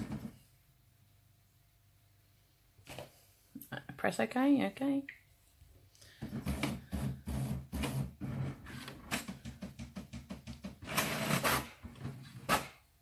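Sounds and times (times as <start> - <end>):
inkjet printer printing: 10.9 - 11.6.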